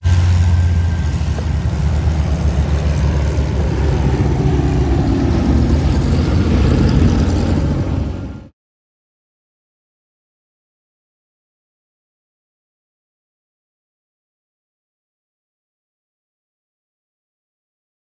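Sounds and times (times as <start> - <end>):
engine rumble: 0.0 - 8.5.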